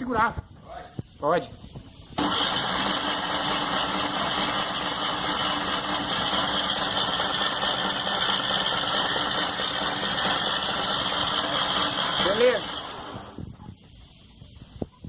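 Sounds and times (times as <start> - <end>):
starter motor cranking engine: 2.2 - 13.3.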